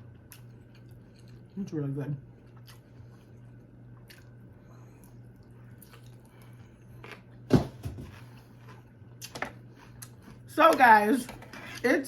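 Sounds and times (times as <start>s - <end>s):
person chewing: 0.0s - 7.4s, 8.3s - 10.5s.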